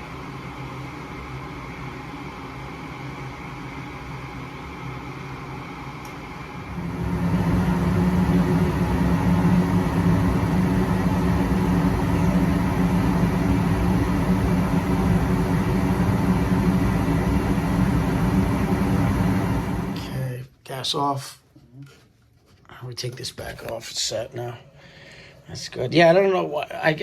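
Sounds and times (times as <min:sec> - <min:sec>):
gas burners roaring: 0:00.0 - 0:20.3
furnace fan hum: 0:00.0 - 0:27.0.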